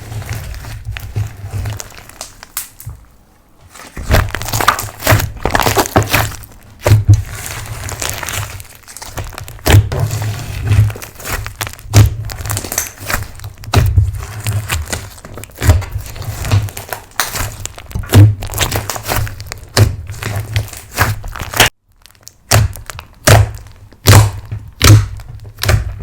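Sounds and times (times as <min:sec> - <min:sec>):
sticky slime crackling and popping: 0:00.0 - 0:26.0.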